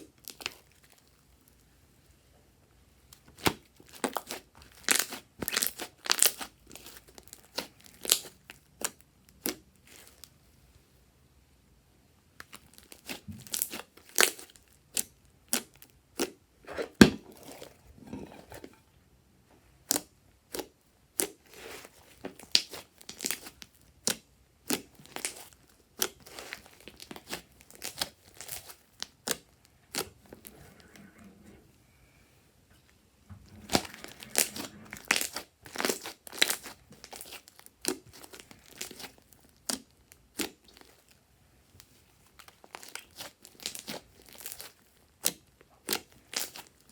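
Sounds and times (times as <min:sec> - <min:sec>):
slime crackling and popping: 0:03.3 - 0:10.3, 0:12.4 - 0:17.7, 0:19.8 - 0:30.2, 0:33.7 - 0:41.2, 0:41.8 - 0:46.9.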